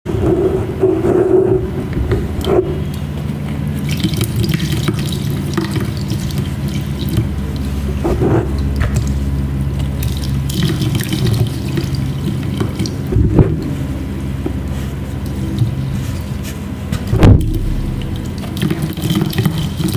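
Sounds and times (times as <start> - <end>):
small sharp clicks and splashes: 2.4 - 7.8, 8.6 - 13.2, 17.4 - 19.9
tap water running: 2.9 - 13.8, 14.4 - 16.4, 17.0 - 19.9.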